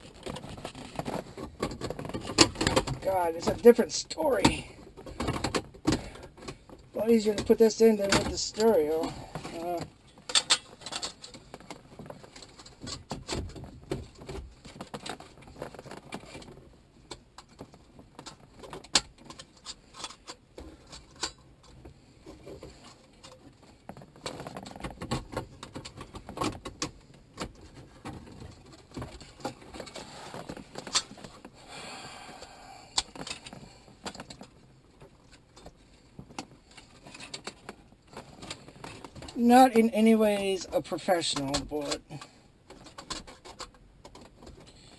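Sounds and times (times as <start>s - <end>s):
plastic clicks and rattles: 0.0s - 31.6s, 41.3s - 44.9s.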